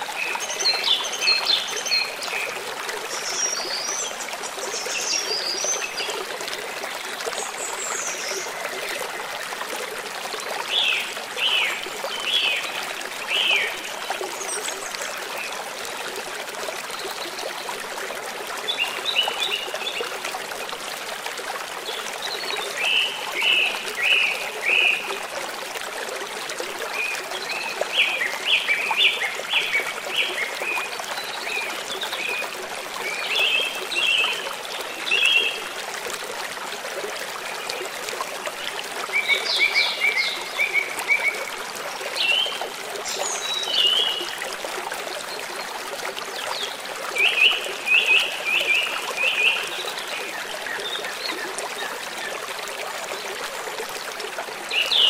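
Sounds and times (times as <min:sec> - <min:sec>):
stream trickling: 0:00.0 - 0:55.0.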